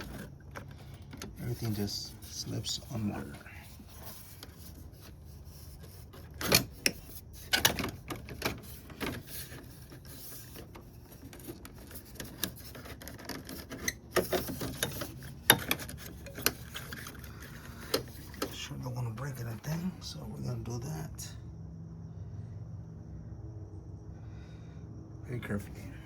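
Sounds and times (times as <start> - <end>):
plastic rubbing: 0.0 - 19.8.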